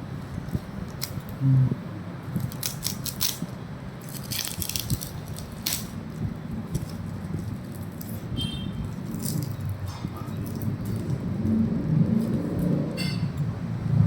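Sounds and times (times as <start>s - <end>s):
steady low hum: 0.0s - 14.0s
plastic packaging crinkling: 2.3s - 11.1s.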